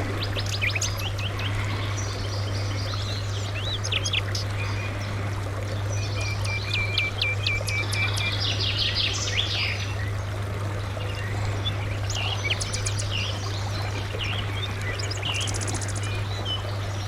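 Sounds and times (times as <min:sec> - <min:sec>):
low even hum: 0:00.0 - 0:17.0
songbirds chirping and trilling: 0:00.0 - 0:17.0.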